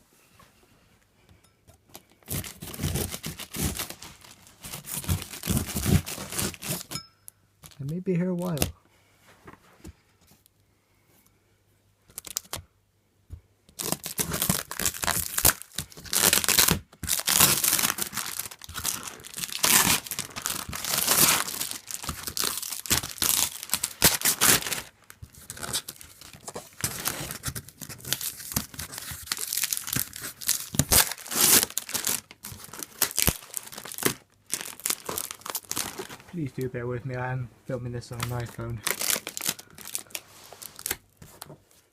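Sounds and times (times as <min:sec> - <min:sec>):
packaging tearing and crumpling: 0:01.9 - 0:07.0, 0:12.1 - 0:12.6, 0:13.8 - 0:36.2, 0:38.1 - 0:41.4.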